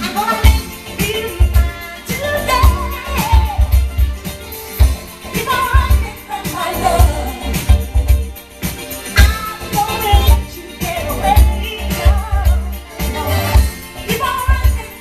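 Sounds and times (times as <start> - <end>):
pop song with singer: 0.0 - 15.0
punchy bass beat: 0.0 - 15.0.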